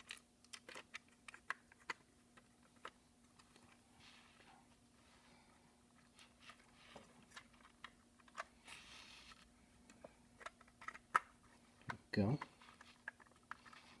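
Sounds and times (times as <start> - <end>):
plastic toy parts clicking: 0.0 - 2.0
faint steady hum: 0.0 - 14.0
soft rustle: 2.6 - 10.7.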